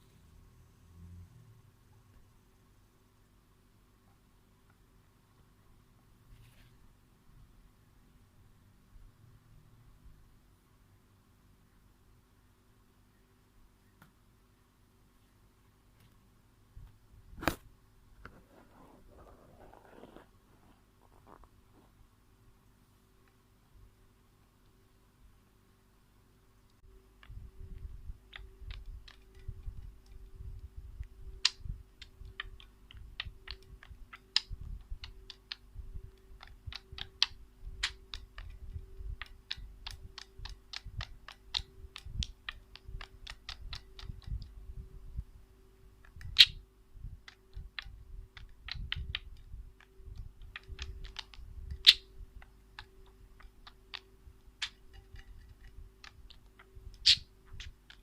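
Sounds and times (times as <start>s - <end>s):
faint steady hum: 0.0s - 58.0s
bird pecking at a mirror: 52.7s - 58.0s.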